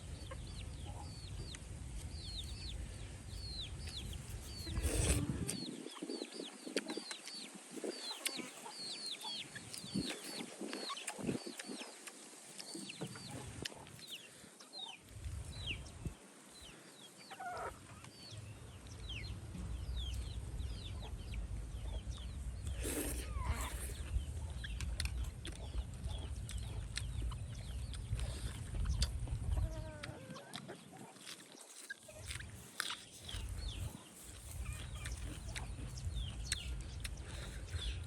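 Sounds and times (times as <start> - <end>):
chickens clucking: 0.0 - 16.0, 16.6 - 38.0
chicks peeping: 0.1 - 38.0.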